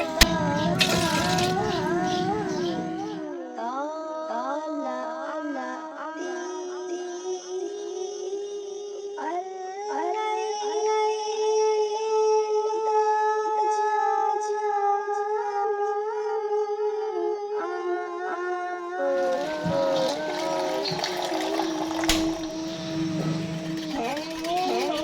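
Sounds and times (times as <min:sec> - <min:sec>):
liquid pouring: 0:00.0 - 0:03.2, 0:19.0 - 0:25.0.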